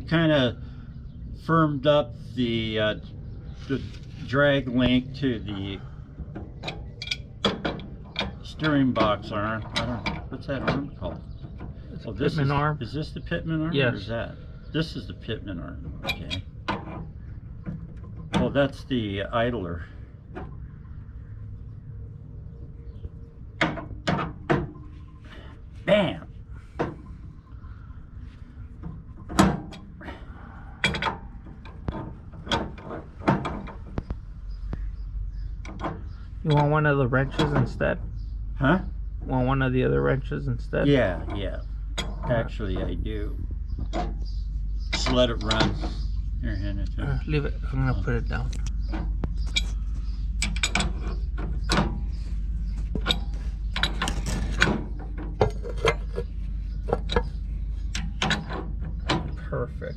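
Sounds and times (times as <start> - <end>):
steady low hum: 0.0 - 59.9
metallic clicks and clanks of wrenches: 4.4 - 12.6, 15.9 - 18.9, 30.8 - 34.2, 35.6 - 38.0, 44.9 - 46.0, 48.3 - 59.5
hand tools clanking on metal: 6.6 - 11.2, 14.8 - 17.0, 35.6 - 38.0, 44.9 - 46.0, 53.0 - 56.3.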